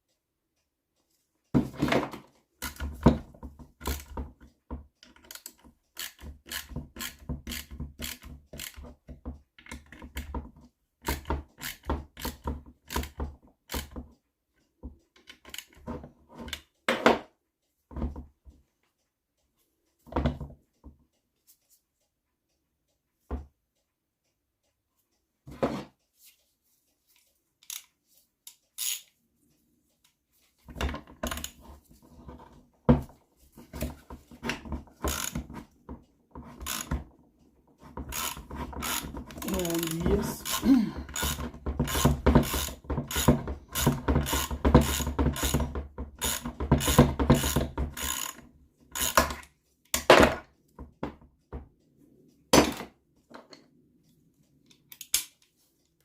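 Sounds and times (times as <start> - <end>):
ratchet wrench clicking: 5.2 - 8.8, 27.6 - 27.9, 28.8 - 29.1, 35.1 - 35.4, 36.6 - 37.0, 38.1 - 45.6, 46.2 - 48.4, 49.0 - 49.5.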